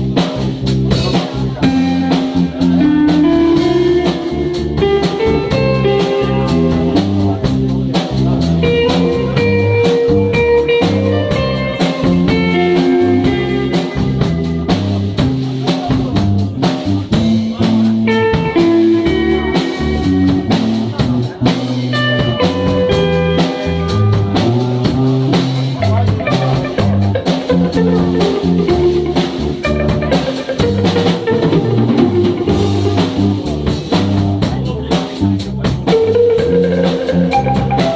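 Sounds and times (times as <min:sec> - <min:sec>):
blues guitar melody: 0:00.0 - 0:37.9
drum kit steady beat: 0:00.0 - 0:37.9.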